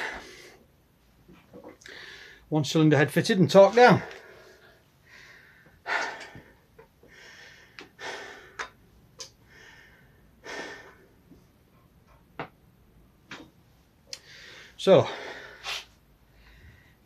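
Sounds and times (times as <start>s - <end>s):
man breathing out: 1.8s - 2.5s, 4.0s - 8.8s, 9.4s - 11.1s.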